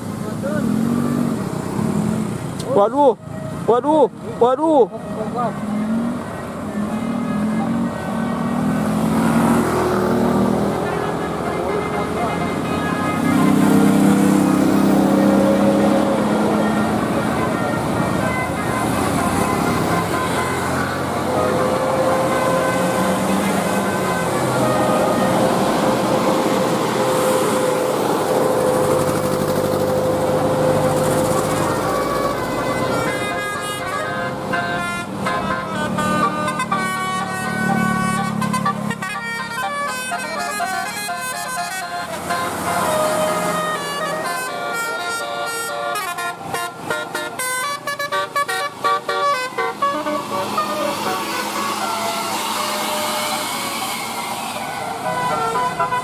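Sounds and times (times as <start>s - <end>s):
bus engine running: 0.0s - 56.0s
air horn melody: 10.6s - 28.4s, 31.2s - 56.0s.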